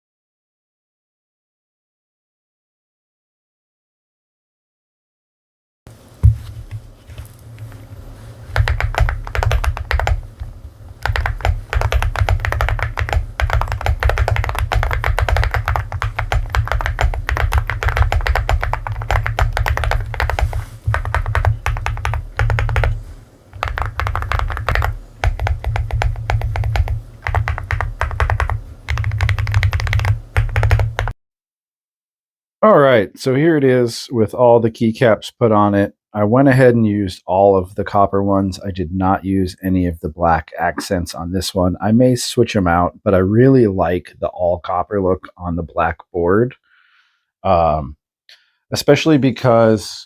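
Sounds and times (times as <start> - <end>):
mechanical keyboard typing: 8.5 - 10.2, 11.0 - 23.0, 23.6 - 31.2.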